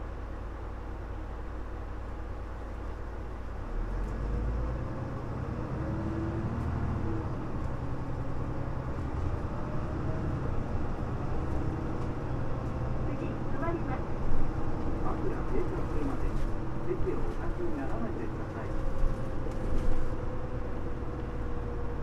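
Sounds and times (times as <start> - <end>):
bus diesel engine accelerating: 0.0 - 22.0.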